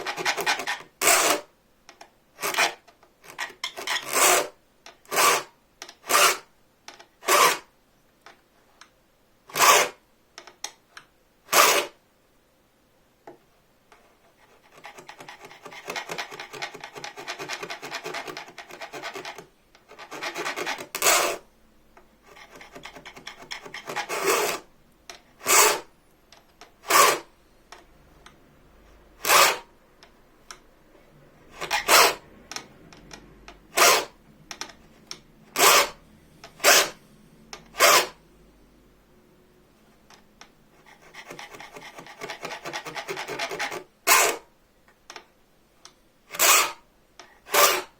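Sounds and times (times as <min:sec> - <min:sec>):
hand file rasping on saw blade: 0:00.0 - 0:01.4, 0:02.4 - 0:04.5, 0:05.1 - 0:06.5, 0:07.2 - 0:07.6, 0:09.5 - 0:10.0, 0:11.5 - 0:11.9, 0:14.6 - 0:21.4, 0:22.3 - 0:24.6, 0:25.4 - 0:25.9, 0:26.8 - 0:27.3, 0:29.2 - 0:29.7, 0:31.5 - 0:32.2, 0:33.7 - 0:34.2, 0:35.6 - 0:37.0, 0:37.8 - 0:38.2, 0:40.8 - 0:44.4, 0:46.3 - 0:46.8, 0:47.5 - 0:47.9.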